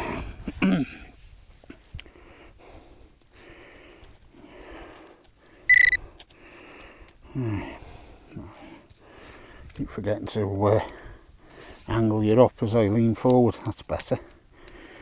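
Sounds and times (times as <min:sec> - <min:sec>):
metal detector beep: 0:05.7 - 0:06.0.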